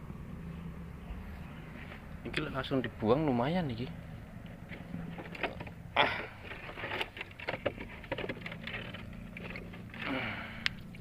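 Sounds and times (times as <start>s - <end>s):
low motor hum: 0.0s - 11.0s
knocks and scrapes: 4.4s - 10.1s.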